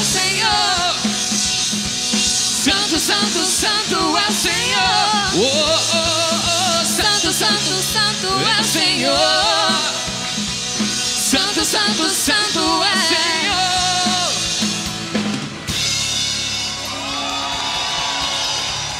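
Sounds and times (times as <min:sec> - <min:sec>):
person singing with vibrato: 0:00.0 - 0:01.6, 0:02.5 - 0:10.4, 0:11.1 - 0:14.6
drum kit with cymbal crashes: 0:00.0 - 0:18.9.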